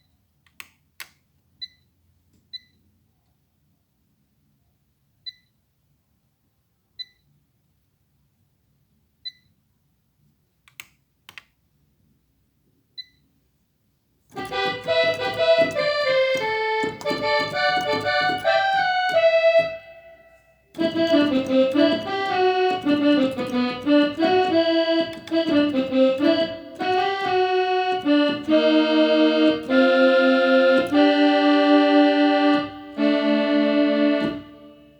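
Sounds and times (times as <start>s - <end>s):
synthesizer accordion-like melody: 14.3s - 34.9s.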